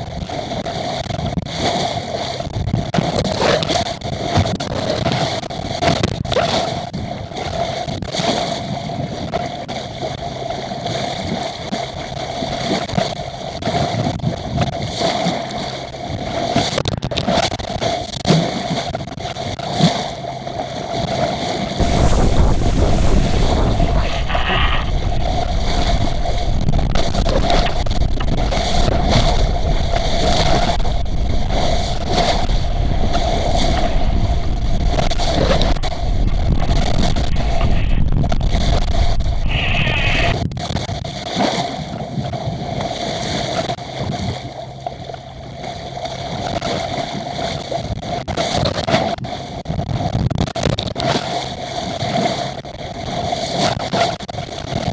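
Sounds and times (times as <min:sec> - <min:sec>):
water rushing along hull: 0:00.0 - 0:54.9
wind buffeting microphone: 0:20.2 - 0:48.2
steady hum: 0:21.8 - 0:40.4.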